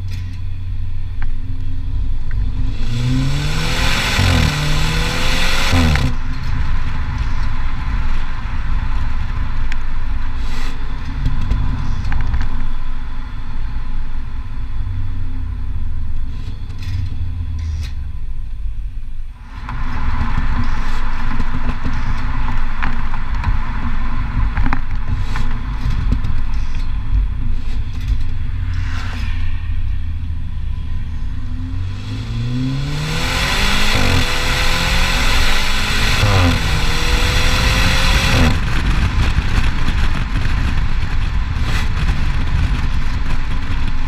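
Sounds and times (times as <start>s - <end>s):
car exhaust rumble with cracks: 0.0s - 44.0s
engine rev: 2.3s - 7.4s, 31.0s - 40.1s.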